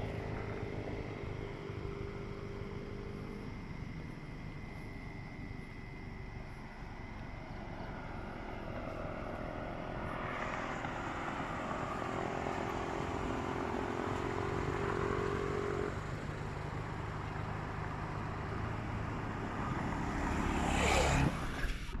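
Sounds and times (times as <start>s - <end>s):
vehicle engine passing: 0.0s - 21.9s.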